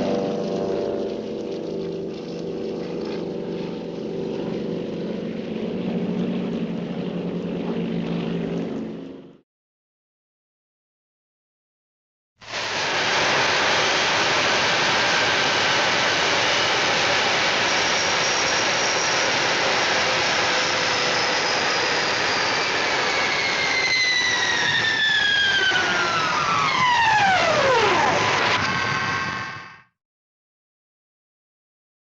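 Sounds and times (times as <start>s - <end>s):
jet engine roar: 0.0s - 9.4s, 12.4s - 30.0s
high whine sliding down: 12.4s - 29.9s.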